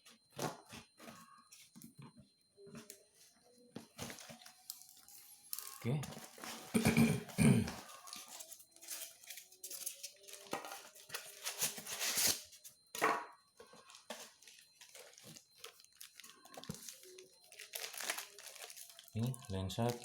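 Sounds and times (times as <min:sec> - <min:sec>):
packaging tearing and crinkling: 0:07.9 - 0:12.5, 0:13.9 - 0:19.2.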